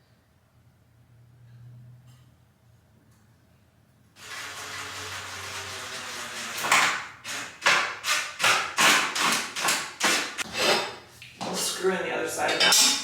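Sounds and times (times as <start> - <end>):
cordless drill driving screws: 4.2 - 10.4.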